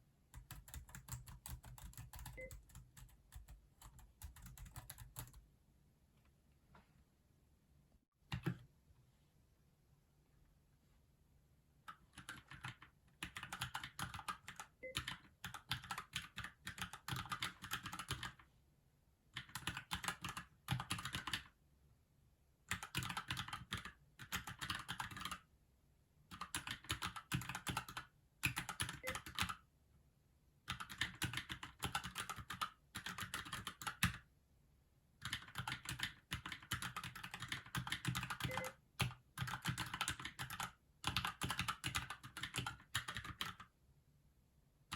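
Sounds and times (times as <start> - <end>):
mechanical keyboard typing: 0.3 - 5.4, 8.3 - 8.6, 11.9 - 18.4, 19.4 - 21.5, 22.7 - 25.4, 26.3 - 29.6, 30.7 - 34.2, 35.2 - 43.7.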